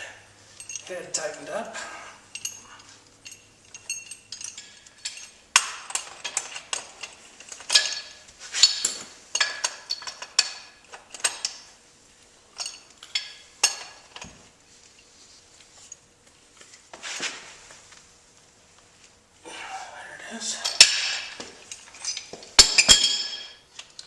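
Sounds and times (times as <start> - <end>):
metal tools clinking: 0.5 - 11.7, 12.5 - 14.3, 20.5 - 24.0.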